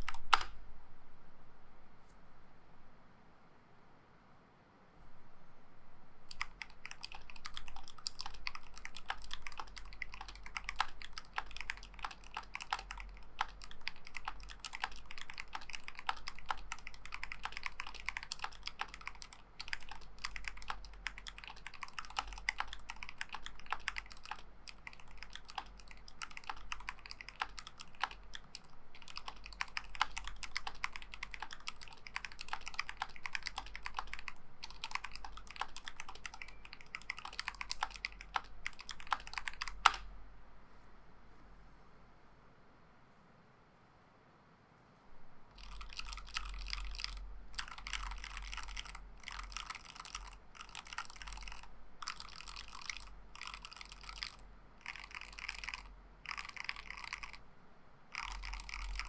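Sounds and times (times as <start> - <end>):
mechanical keyboard typing: 0.0 - 0.6, 6.3 - 40.1, 45.5 - 57.4, 58.1 - 59.0.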